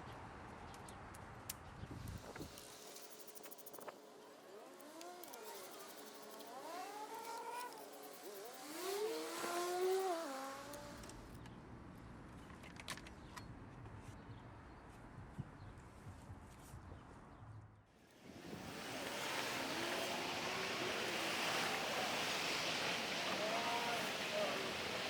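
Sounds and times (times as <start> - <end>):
vehicle engine accelerating: 4.6 - 11.0, 18.4 - 25.0.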